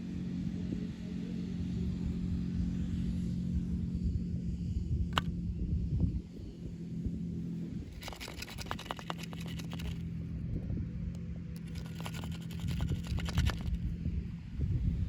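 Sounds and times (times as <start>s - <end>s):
steady low hum: 0.0s - 15.0s
toy packaging crinkling: 8.0s - 10.0s.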